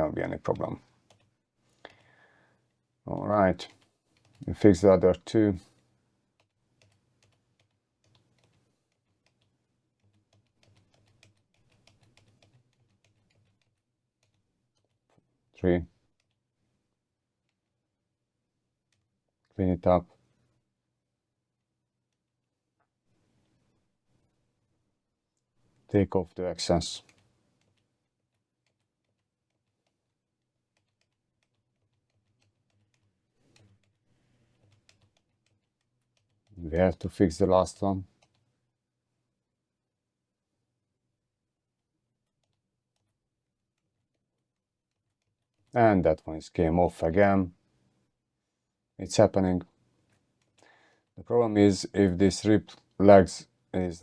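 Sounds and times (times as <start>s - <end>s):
faint small clicks: 0.5s - 2.2s, 6.4s - 15.2s, 18.9s - 19.6s, 27.0s - 30.0s, 38.0s - 38.5s, 42.2s - 43.2s, 50.0s - 51.2s.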